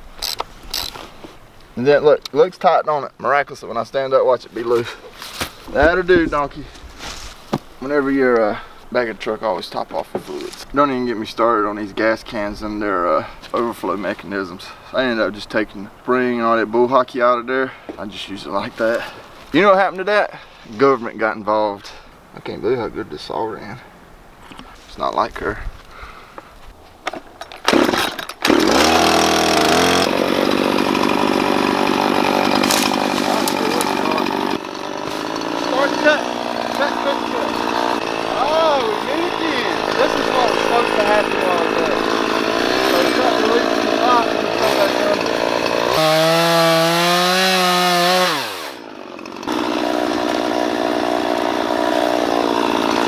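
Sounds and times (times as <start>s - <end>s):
chainsaw revving: 27.7s - 53.0s.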